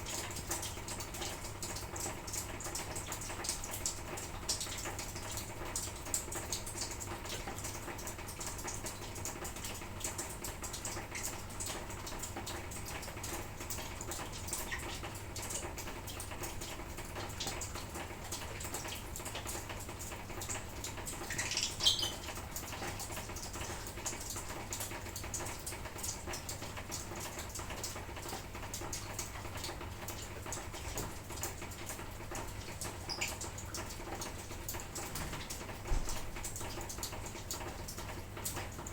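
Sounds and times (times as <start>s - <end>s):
light rain patter: 0.0s - 38.9s
bird chirp: 21.4s - 22.2s.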